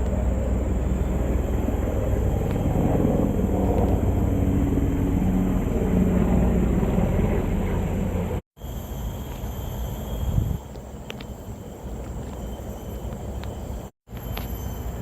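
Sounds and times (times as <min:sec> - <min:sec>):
low engine rumble: 0:00.0 - 0:08.4.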